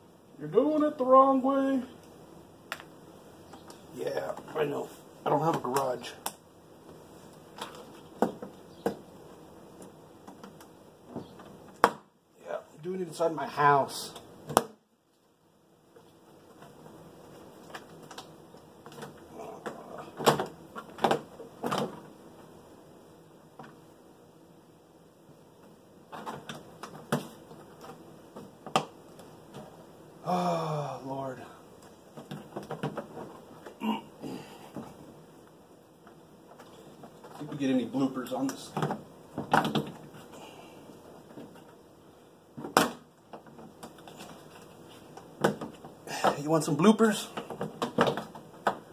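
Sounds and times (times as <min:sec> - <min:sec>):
handling noises with faint clicks: 0:05.5 - 0:09.0, 0:15.9 - 0:22.6, 0:34.7 - 0:37.6.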